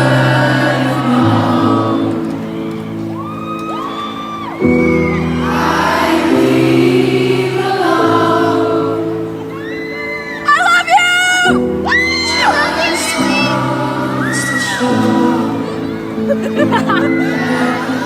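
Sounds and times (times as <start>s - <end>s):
woman singing: 12.3s - 18.0s.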